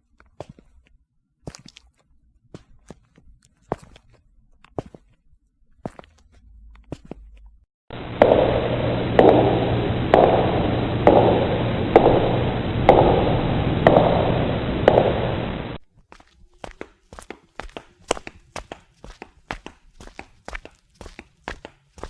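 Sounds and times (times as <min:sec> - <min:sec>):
low hum: 0:07.9 - 0:15.8
steady hiss: 0:07.9 - 0:15.8
footsteps on concrete: 0:16.1 - 0:22.0.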